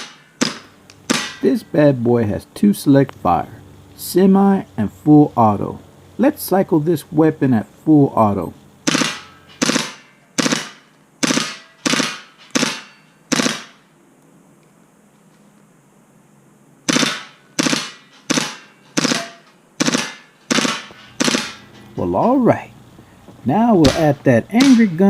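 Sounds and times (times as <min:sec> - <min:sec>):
airsoft gun firing: 0:00.0 - 0:01.5, 0:08.8 - 0:13.9, 0:16.9 - 0:21.7, 0:23.9 - 0:25.0.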